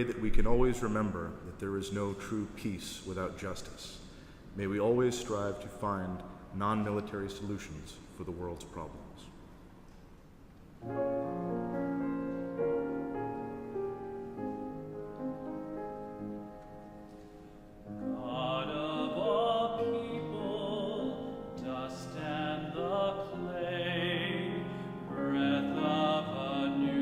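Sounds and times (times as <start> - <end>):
held keyboard chords: 10.8 - 27.0
person singing with vibrato: 17.9 - 27.0.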